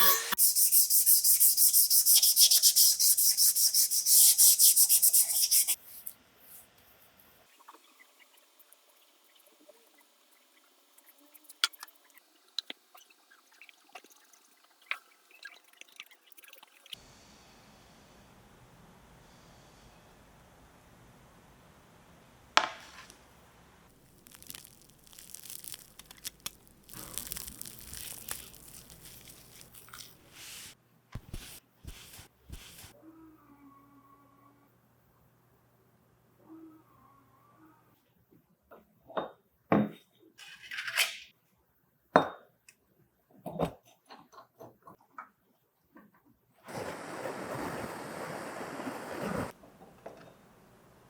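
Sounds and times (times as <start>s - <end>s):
faint hiss: 22.8s - 32.9s
tearing-like rasps: 24.0s - 31.6s
workshop scraping: 26.9s - 32.9s.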